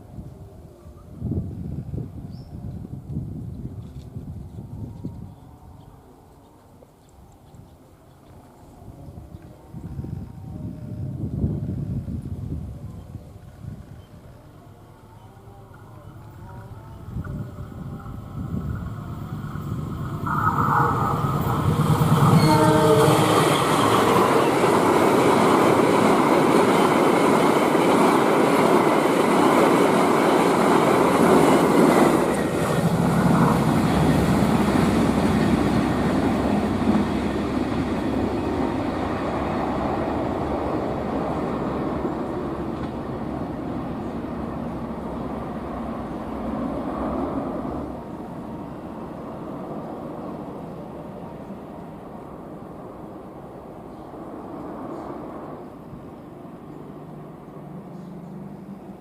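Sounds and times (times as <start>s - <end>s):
train horn blasts: 14.9s - 24.8s
train rushing past: 15.7s - 59.0s.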